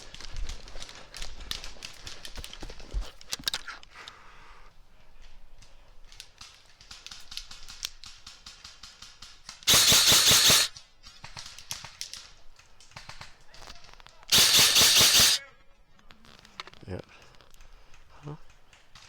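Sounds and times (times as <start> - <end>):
scattered shot clicks: 6.5 - 13.4, 14.3 - 15.4
airsoft gun full-auto bursts: 9.7 - 12.0, 14.3 - 15.4.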